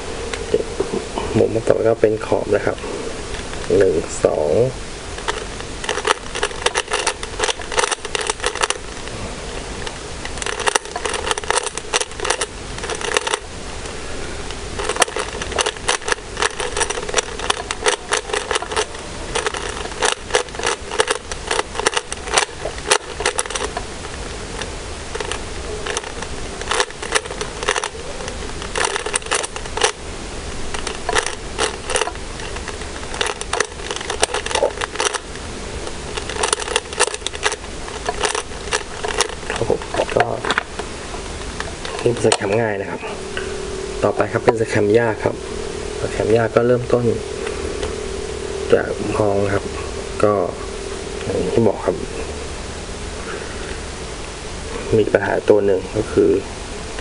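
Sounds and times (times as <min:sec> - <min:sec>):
puzzle cube plastic clicks: 0:05.2 - 0:09.1, 0:09.8 - 0:13.5, 0:14.5 - 0:30.0, 0:30.7 - 0:40.8.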